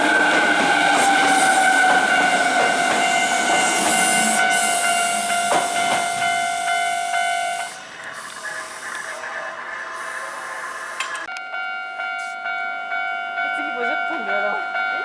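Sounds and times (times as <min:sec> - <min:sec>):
passing train noise: 0:00.0 - 0:15.0
level crossing bell ringing: 0:11.3 - 0:15.0.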